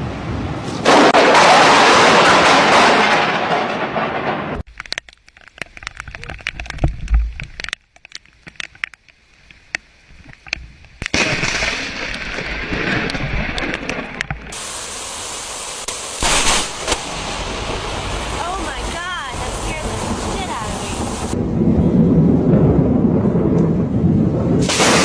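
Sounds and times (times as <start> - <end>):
lightning crackling cracks: 0.0 - 6.9, 11.0 - 25.0
steady rushing noise: 13.0 - 25.0
low boom of thunder: 21.3 - 25.0.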